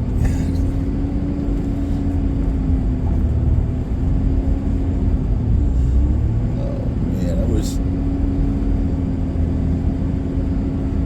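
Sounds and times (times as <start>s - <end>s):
constant low hum: 0.0s - 11.0s
truck engine and road rumble: 0.0s - 11.0s.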